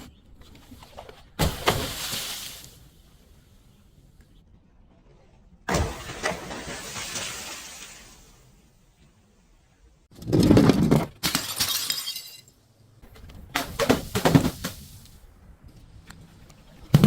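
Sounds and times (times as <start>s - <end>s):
glass shattering: 11.2s - 12.6s.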